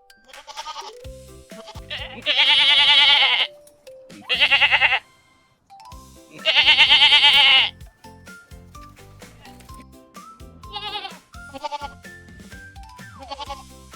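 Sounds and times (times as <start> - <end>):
background music: 0.0 - 13.9
farm animal bleating: 0.2 - 3.6, 4.2 - 5.1, 6.3 - 7.8, 10.6 - 12.0, 13.2 - 13.7.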